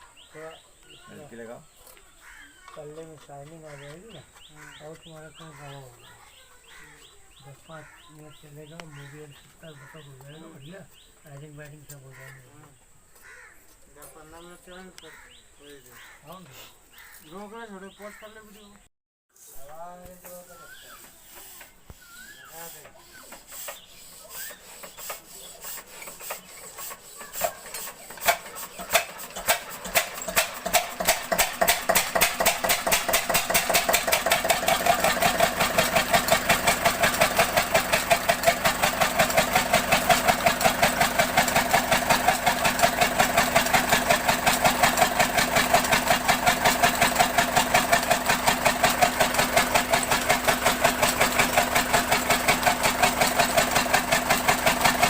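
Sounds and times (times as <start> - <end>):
diesel engine starting and running: 23.6 - 55.0.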